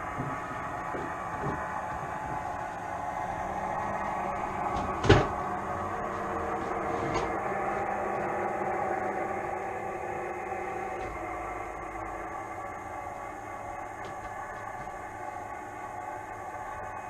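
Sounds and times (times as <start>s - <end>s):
model train humming and rumbling: 0.0s - 17.0s.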